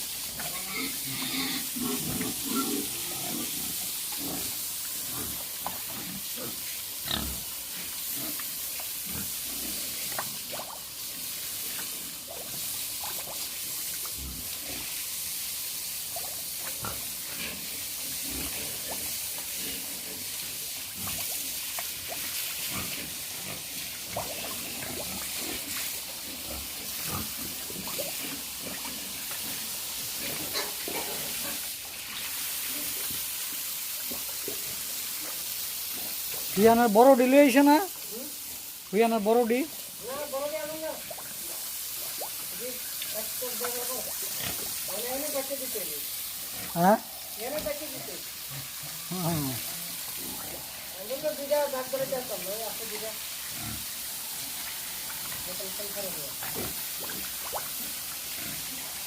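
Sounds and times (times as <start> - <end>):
steady hiss: 0.0 - 59.0
pigs grunting: 0.4 - 8.4, 22.6 - 31.7, 46.4 - 51.1, 53.5 - 54.5, 58.3 - 59.0.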